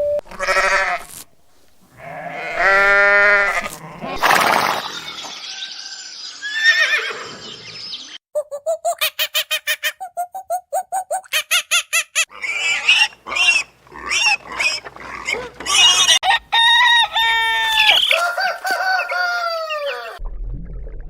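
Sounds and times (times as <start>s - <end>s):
chickens calling: 0.3s - 10.1s, 11.3s - 20.2s
rooster crowing: 15.9s - 20.2s.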